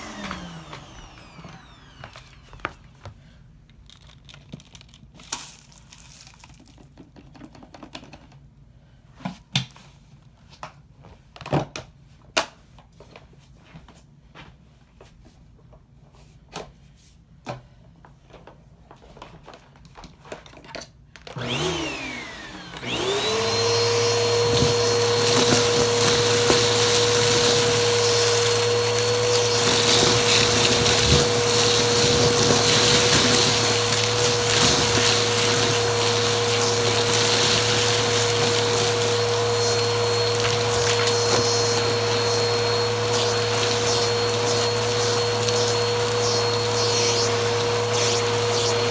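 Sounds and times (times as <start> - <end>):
vacuum cleaner motor whine: 0.0 - 3.0, 21.4 - 48.9.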